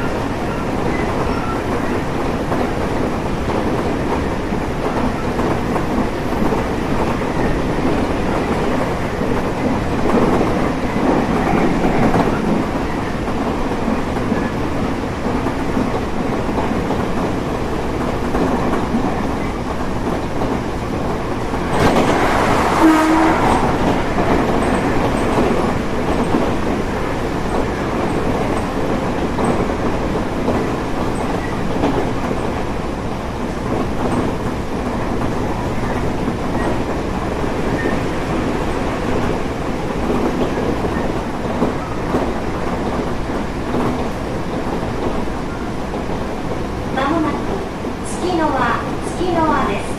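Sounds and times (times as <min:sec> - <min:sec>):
train wheels rumbling on rails: 0:00.0 - 0:49.9
louder rush with brief tone: 0:21.7 - 0:24.8.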